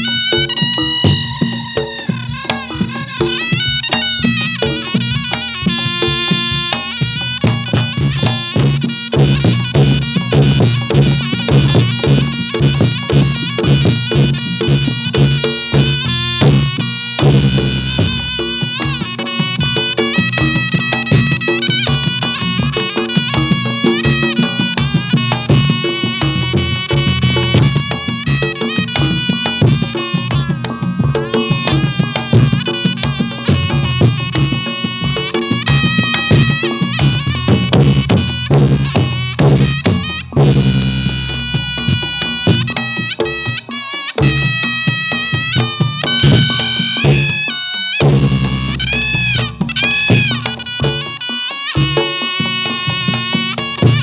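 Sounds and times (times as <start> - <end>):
drum beat: 0.0 - 54.0
reedy shawm melody: 0.0 - 54.0.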